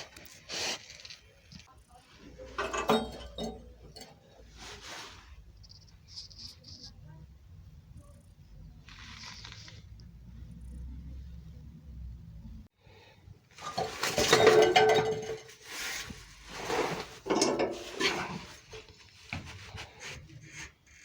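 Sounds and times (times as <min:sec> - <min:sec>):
metal parts clanking and scraping: 0:02.2 - 0:04.8, 0:13.6 - 0:18.9.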